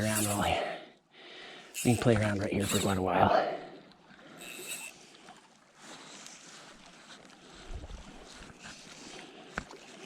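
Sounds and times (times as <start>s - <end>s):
mountain creek running: 0.0s - 10.0s.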